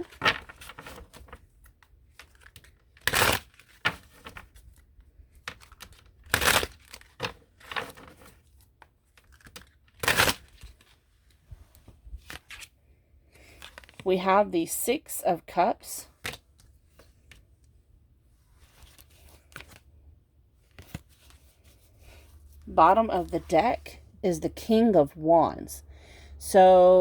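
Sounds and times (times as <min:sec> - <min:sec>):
cards rustling and tapping: 0:00.0 - 0:11.0, 0:18.6 - 0:20.0, 0:20.6 - 0:22.3.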